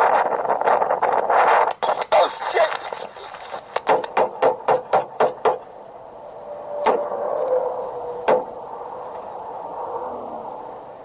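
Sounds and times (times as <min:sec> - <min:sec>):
steady mid-pitched hum: 0:00.0 - 0:11.0.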